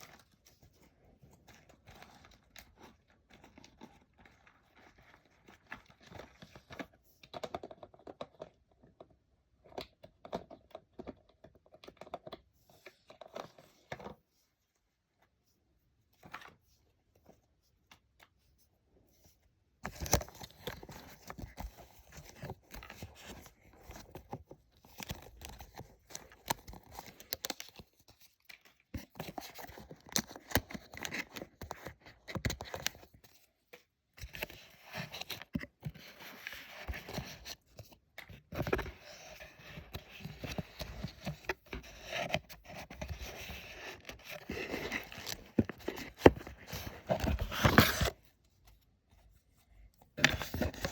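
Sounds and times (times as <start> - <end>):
packaging rustling and tearing: 38.5 - 48.2.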